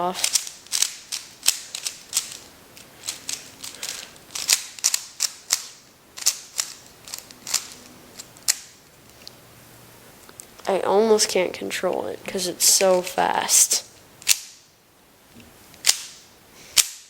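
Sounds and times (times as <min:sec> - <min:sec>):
plastic puzzle cube clicking: 0:00.2 - 0:08.7.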